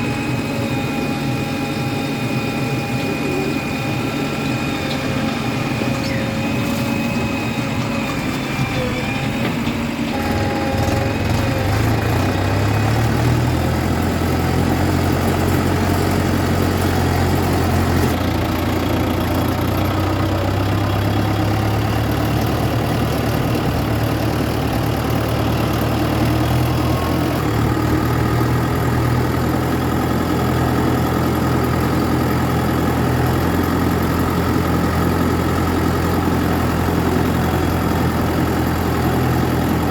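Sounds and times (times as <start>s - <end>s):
diesel engine idling: 0.0s - 39.9s.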